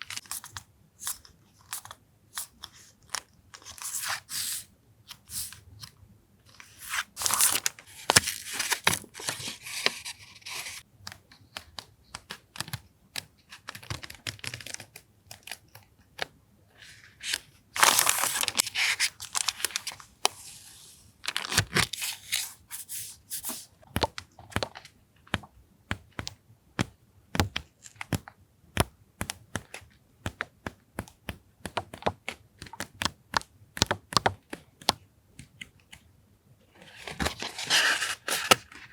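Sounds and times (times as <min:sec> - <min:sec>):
paper and stationery tapping: 0:23.4 - 0:36.0.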